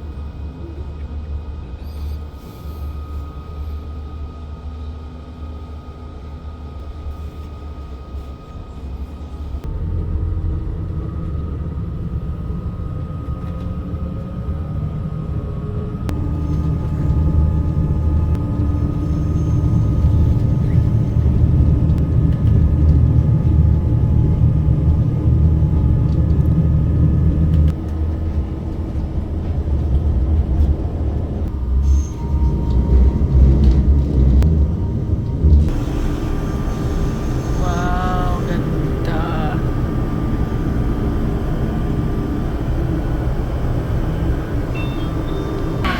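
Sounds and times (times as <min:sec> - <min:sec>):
train wheels rumbling on rails: 0:00.0 - 0:45.9
faint steady whine: 0:31.4 - 0:45.9.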